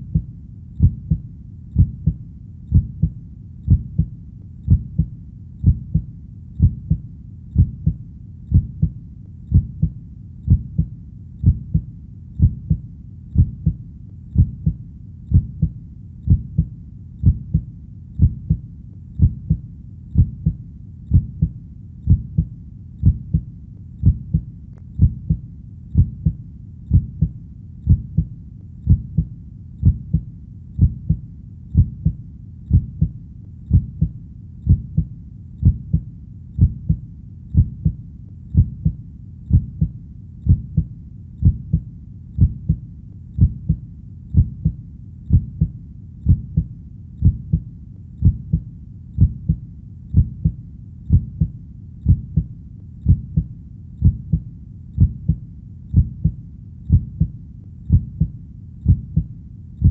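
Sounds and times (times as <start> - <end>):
deep heartbeat: 0.0 - 59.9.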